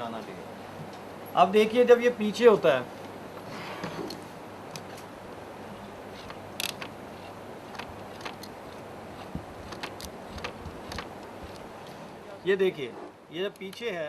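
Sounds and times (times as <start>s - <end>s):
steady low hum: 0.0s - 14.0s
small plastic clicks: 6.2s - 11.7s.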